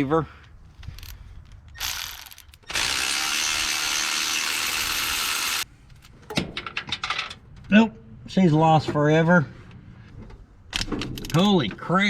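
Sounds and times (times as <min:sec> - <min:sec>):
power ratchet running: 0:01.8 - 0:05.6.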